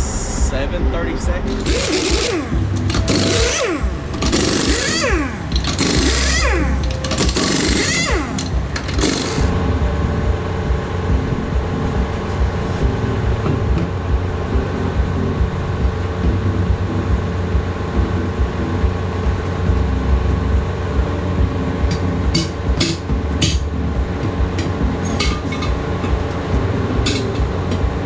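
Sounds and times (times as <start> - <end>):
diesel engine idling: 1.3 - 28.0.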